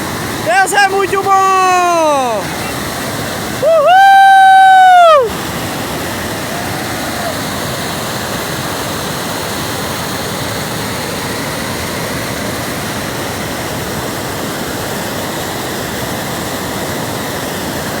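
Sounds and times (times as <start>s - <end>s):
water rushing: 0.0s - 18.0s.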